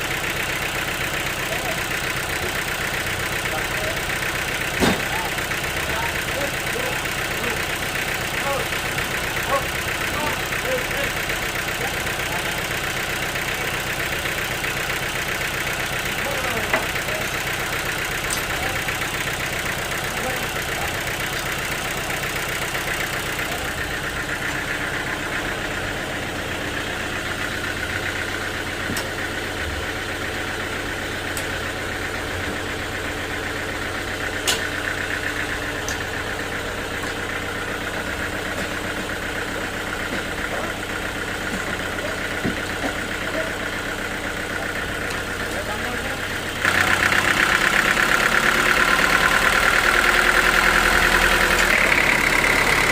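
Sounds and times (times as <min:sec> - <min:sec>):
sawmill machinery drone: 0:00.0 - 0:52.9.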